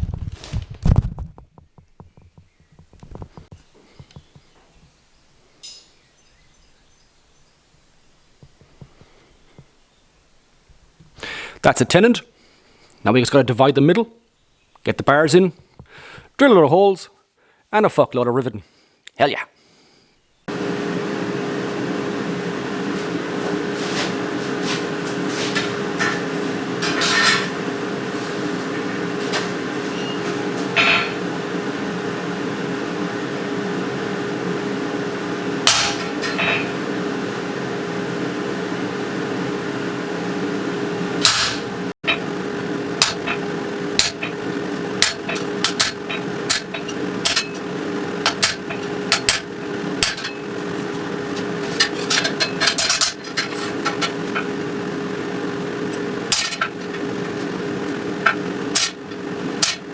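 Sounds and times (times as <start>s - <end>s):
steady mechanical hum: 1.8s - 16.6s, 19.5s - 59.9s
hammer blows on metal: 43.0s - 50.5s.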